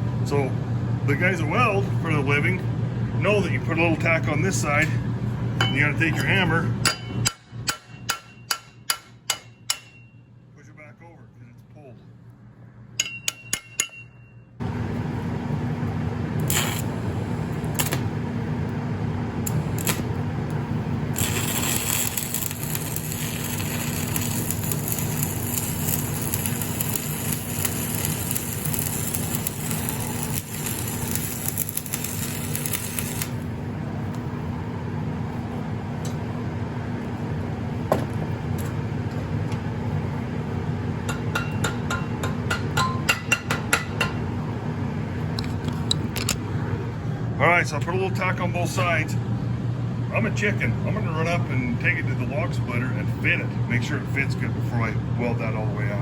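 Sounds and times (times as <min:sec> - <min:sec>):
welding machine humming: 0:14.6 - 0:35.6
welding arc hissing and crackling: 0:16.4 - 0:18.1, 0:19.5 - 0:20.2, 0:21.1 - 0:33.6.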